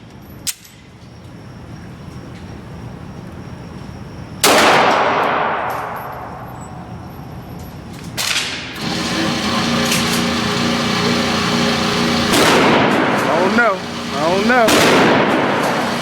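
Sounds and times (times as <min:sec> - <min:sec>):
gunshot with echo: 0:04.4 - 0:06.0, 0:12.3 - 0:13.2, 0:14.7 - 0:15.5.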